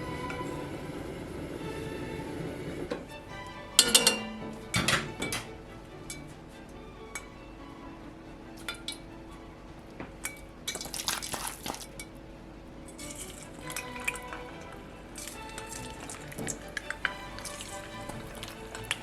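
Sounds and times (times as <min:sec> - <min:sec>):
quiet background music: 0:00.0 - 0:19.0
utensils clinking against dishes: 0:03.8 - 0:05.5
liquid splashing: 0:10.7 - 0:12.0, 0:13.0 - 0:19.0.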